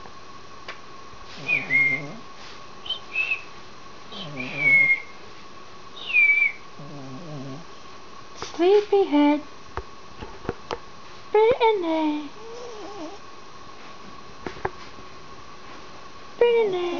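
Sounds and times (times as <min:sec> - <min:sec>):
pet snoring with whistle: 0:01.4 - 0:02.2, 0:04.1 - 0:05.1.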